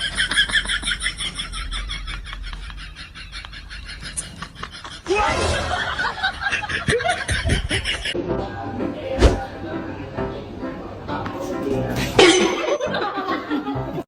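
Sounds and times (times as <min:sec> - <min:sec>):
person laughing: 0:00.4 - 0:08.2.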